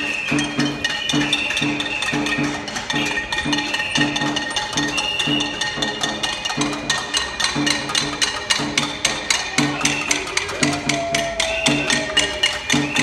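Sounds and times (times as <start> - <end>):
pots and pans banging: 0.0 - 13.0
low regular beat: 5.6 - 13.0.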